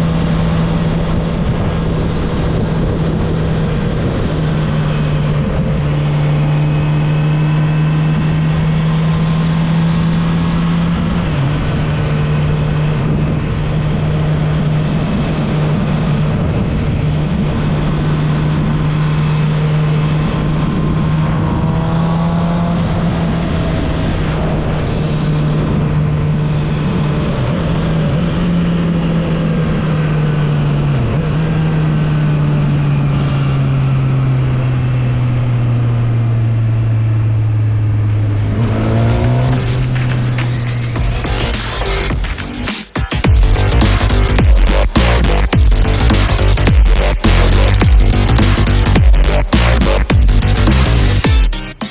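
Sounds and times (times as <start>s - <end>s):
steady rushing noise: 38.0s - 51.9s
motorcycle engine running: 43.2s - 51.9s.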